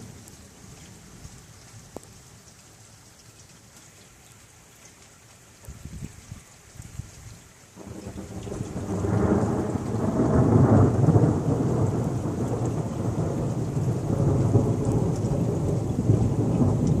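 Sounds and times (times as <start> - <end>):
steady rain: 0.0 - 17.0
thunder rumbling: 7.8 - 17.0.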